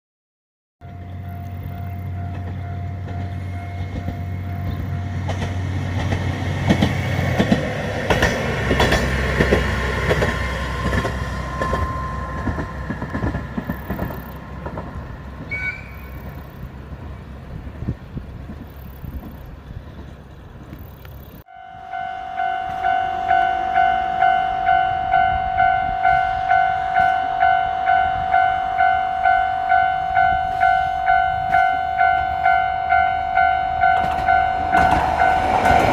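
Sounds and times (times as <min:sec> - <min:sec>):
level crossing warning bell: 0:00.8 - 0:05.4, 0:10.2 - 0:14.4, 0:21.5 - 0:35.9
diesel railcar engine droning: 0:00.8 - 0:35.9
wheels clattering over rail joints: 0:01.0 - 0:21.4, 0:33.8 - 0:35.9.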